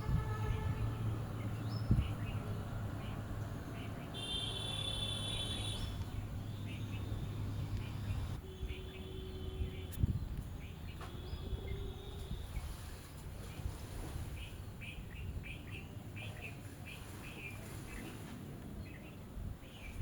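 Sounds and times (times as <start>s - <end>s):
small birds chirping: 1.4s - 12.8s.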